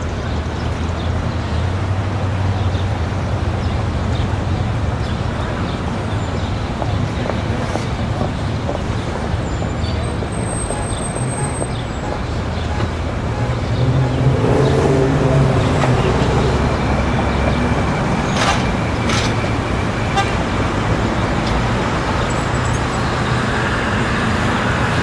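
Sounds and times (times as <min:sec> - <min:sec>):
engines passing: 0:00.0 - 0:25.0
traffic: 0:00.0 - 0:25.0
indistinct voices: 0:05.2 - 0:25.0.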